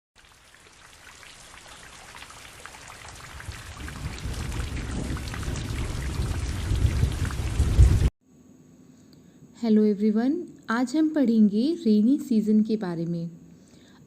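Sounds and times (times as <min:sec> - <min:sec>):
rain falling: 0:00.2 - 0:08.1
low rumble of thunder: 0:02.7 - 0:08.1.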